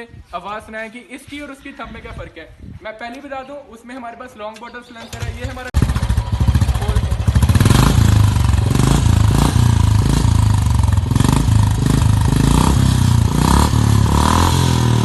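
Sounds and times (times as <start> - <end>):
motorcycle engine throttle blips: 5.0 - 14.5.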